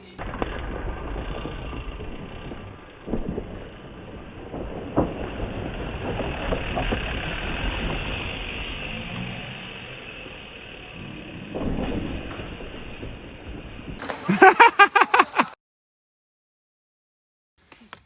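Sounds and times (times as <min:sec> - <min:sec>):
bike tyre and wind rumble: 0:00.0 - 0:14.3.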